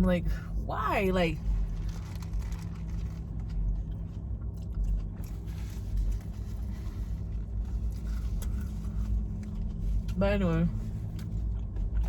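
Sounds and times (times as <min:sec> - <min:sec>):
steady low hum: 0:00.0 - 0:12.0
person chewing food: 0:01.9 - 0:10.2, 0:11.0 - 0:12.0.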